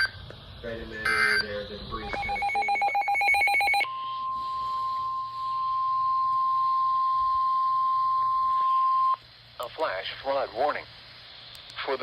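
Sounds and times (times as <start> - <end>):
buzzing digital data burst: 0.9 - 9.1
steady alert tone beep: 1.0 - 4.6.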